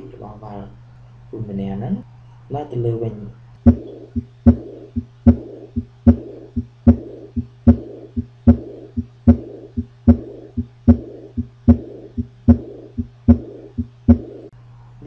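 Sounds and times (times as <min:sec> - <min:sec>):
low steady hum: 0:00.0 - 0:15.0
heartbeat: 0:03.6 - 0:14.5
soft blowing heart murmur: 0:03.6 - 0:14.5.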